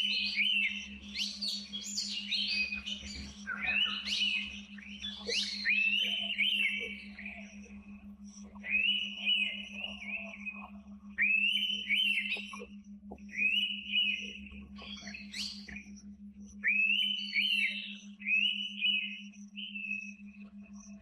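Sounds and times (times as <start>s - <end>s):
bird whistled calls: 0.0s - 7.6s, 8.6s - 12.6s, 13.3s - 16.0s, 16.6s - 20.2s
steady low hum: 0.0s - 21.0s.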